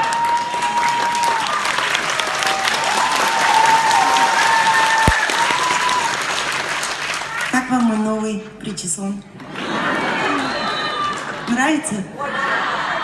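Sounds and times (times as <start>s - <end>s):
audience applauding: 0.0s - 7.9s.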